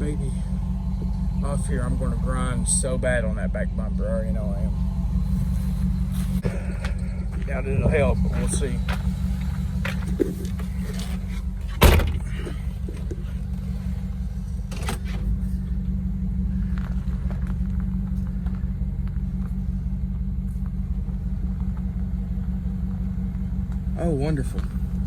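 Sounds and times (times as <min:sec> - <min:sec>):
car engine low rumble: 0:00.0 - 0:25.0
loud clunk: 0:07.8 - 0:13.2.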